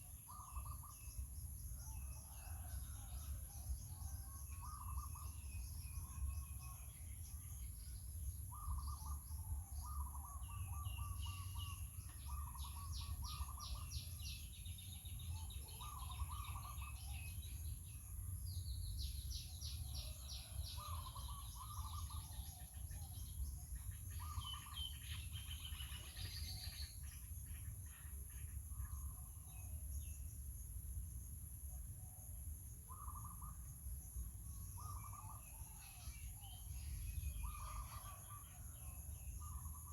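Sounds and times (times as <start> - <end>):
birds chirping and trilling: 0.0 - 30.2, 32.9 - 33.7, 34.5 - 39.9
constant high hiss: 3.3 - 39.9.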